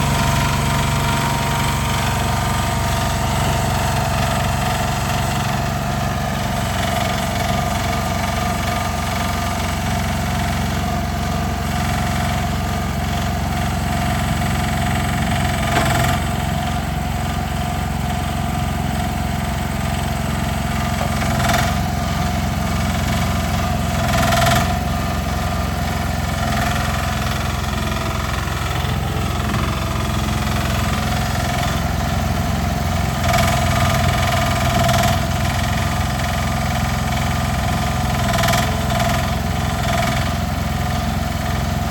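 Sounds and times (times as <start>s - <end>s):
small diesel engine running: 0.0s - 41.9s.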